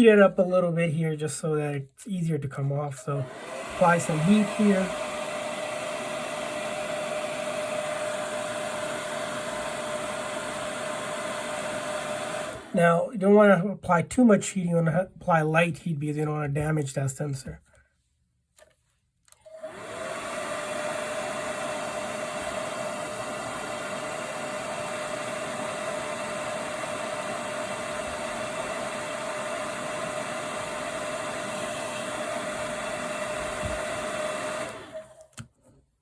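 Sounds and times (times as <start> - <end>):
hot-air blower whining: 3.0 - 13.1, 19.5 - 35.4.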